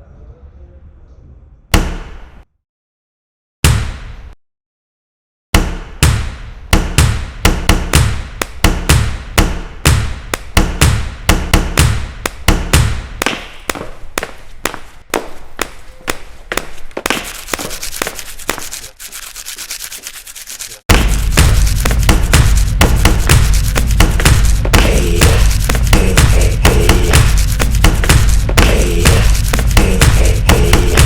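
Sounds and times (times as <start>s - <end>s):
percussive hits with low thumps: 1.7s - 2.4s, 3.6s - 4.4s, 5.5s - 15.8s, 20.9s - 31.0s
rubbing scraping noise: 14.4s - 31.0s.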